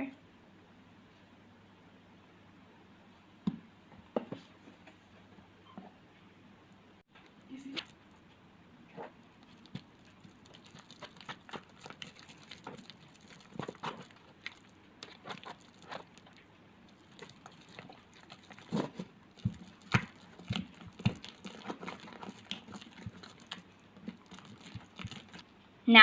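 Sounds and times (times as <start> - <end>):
slime squelching and popping: 9.1 - 25.4.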